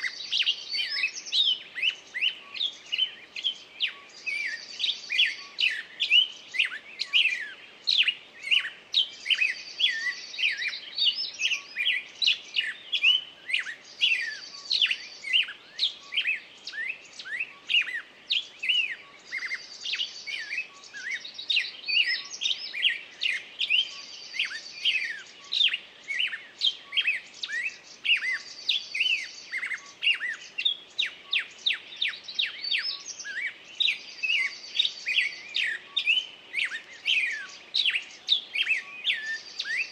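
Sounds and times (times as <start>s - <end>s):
songbirds chirping and whistling: 0.0s - 39.9s.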